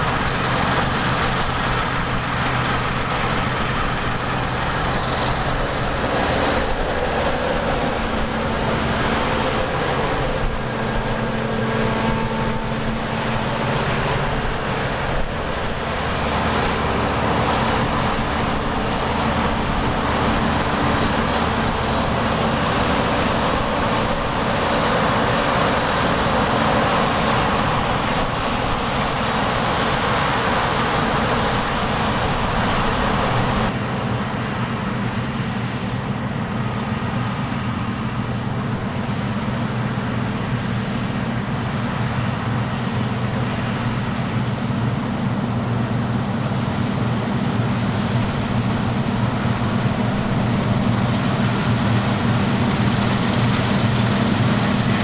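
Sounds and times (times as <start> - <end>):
diesel engine running under load: 0.0 - 55.0.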